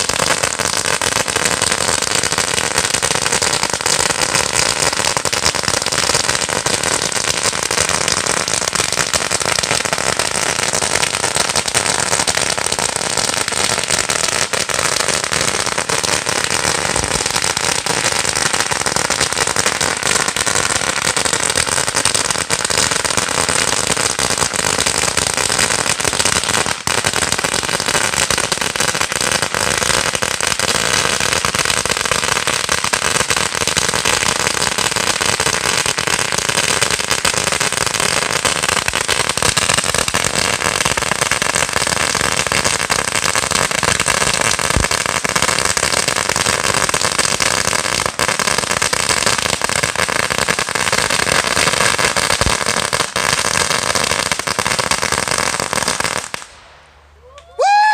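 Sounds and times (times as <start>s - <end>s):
firecracker strip rattling bangs: 38.8s - 57.0s.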